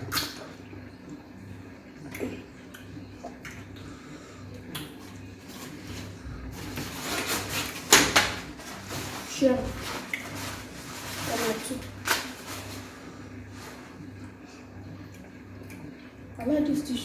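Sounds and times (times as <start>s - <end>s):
rustling and mouth noise: 4.6s - 14.0s.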